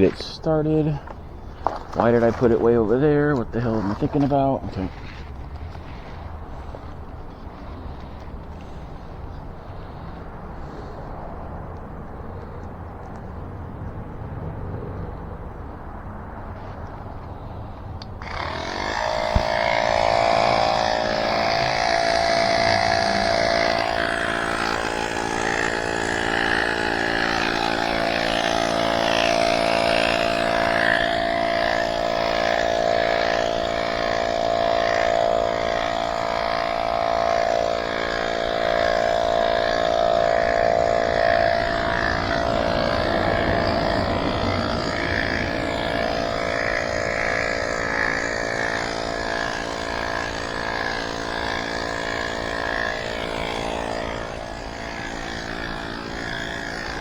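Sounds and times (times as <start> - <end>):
electric air pump running: 0.0 - 14.2, 15.7 - 57.0.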